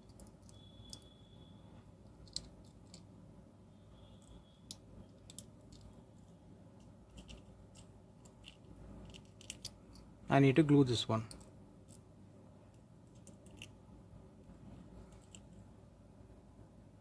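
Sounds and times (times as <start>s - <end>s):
faint clicks of small parts: 0.0s - 1.2s, 2.0s - 3.1s, 4.1s - 10.1s, 11.2s - 12.1s, 12.7s - 13.8s, 15.0s - 15.7s.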